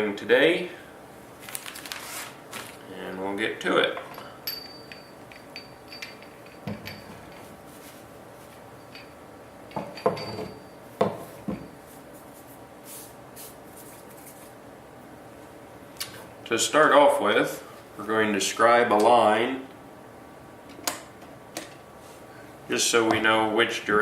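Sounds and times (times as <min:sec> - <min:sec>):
small metal parts clinking: 0:03.9 - 0:07.9, 0:08.6 - 0:11.8.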